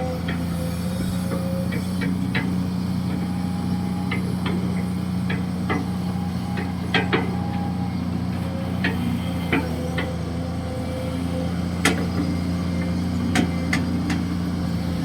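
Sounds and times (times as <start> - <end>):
excavator diesel engine running: 0.0 - 15.0
metallic clanks and knocks: 0.2 - 10.2, 11.8 - 12.4, 13.3 - 14.3.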